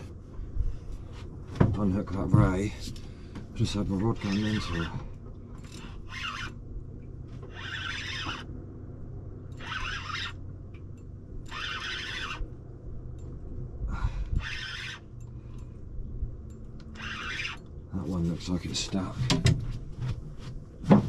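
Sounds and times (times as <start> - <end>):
fishing reel ratchet buzzing: 4.2 - 5.0, 5.6 - 6.6, 7.5 - 8.5, 9.5 - 10.4, 11.4 - 12.5, 14.3 - 15.1, 16.9 - 17.7.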